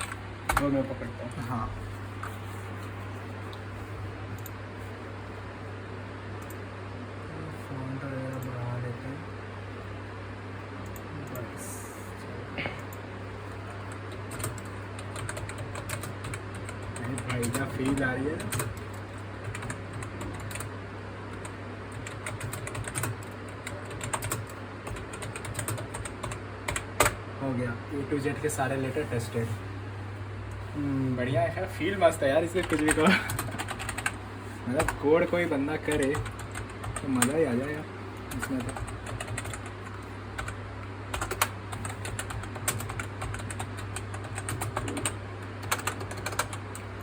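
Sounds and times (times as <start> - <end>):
keyboard typing: 0.0 - 1.4, 13.6 - 27.2, 32.4 - 47.0
steady low hum: 0.0 - 47.0.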